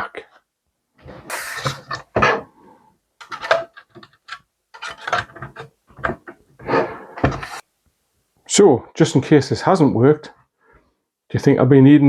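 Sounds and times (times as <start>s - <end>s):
computer parts clicking and rattling: 3.2s - 6.3s.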